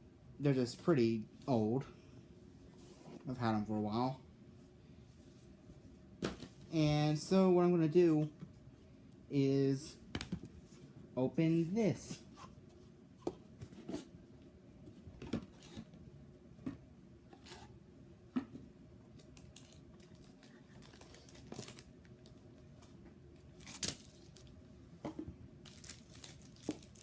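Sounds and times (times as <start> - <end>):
plastic wrapping tearing and crinkling: 19.3 - 21.9, 23.6 - 24.5, 25.6 - 27.0.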